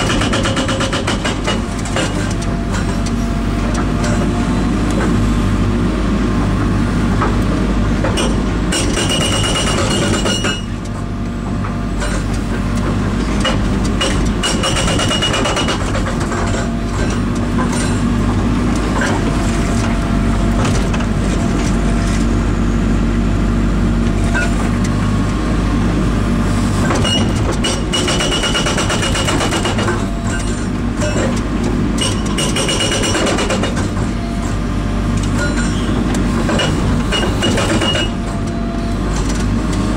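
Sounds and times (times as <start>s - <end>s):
hydraulic breaker hammering: 0.0s - 3.0s, 8.0s - 21.6s, 26.8s - 31.3s, 32.0s - 34.3s, 35.3s - 38.6s
engine running: 0.0s - 39.9s.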